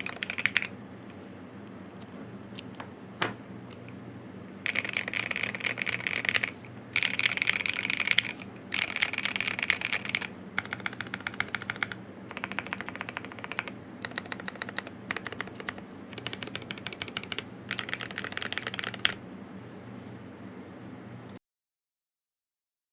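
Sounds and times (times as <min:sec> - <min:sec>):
mechanical keyboard typing: 0:00.0 - 0:00.7, 0:04.6 - 0:19.2.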